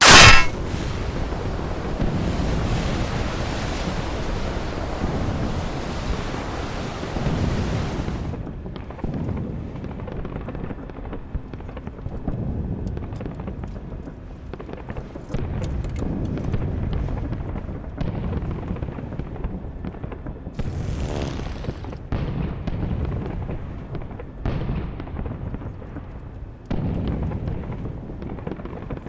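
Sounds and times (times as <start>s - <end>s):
loud burst: 0.0s - 0.6s
wind: 0.0s - 29.0s
rumbling sea surf: 1.5s - 8.3s.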